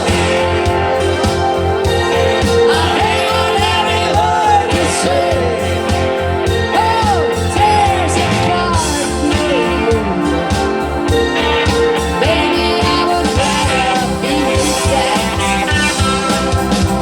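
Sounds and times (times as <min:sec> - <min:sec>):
live band music with singer: 0:00.0 - 0:17.0.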